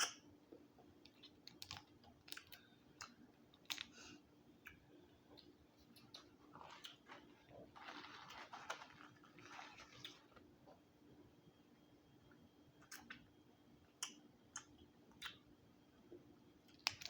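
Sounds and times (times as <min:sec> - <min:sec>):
small clicks and smacks: 0:00.0 - 0:04.0, 0:14.0 - 0:15.5, 0:16.6 - 0:17.0
person chewing: 0:01.1 - 0:10.8
soft rustling: 0:05.7 - 0:10.8.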